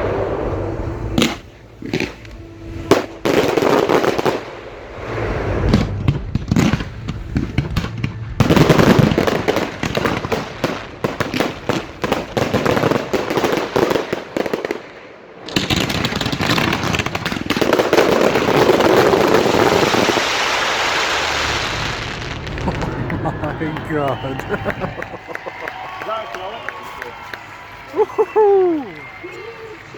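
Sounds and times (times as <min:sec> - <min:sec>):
fireworks bangs and crackling: 0:00.0 - 0:25.8
dense wash of noise: 0:04.4 - 0:07.4, 0:19.4 - 0:25.2.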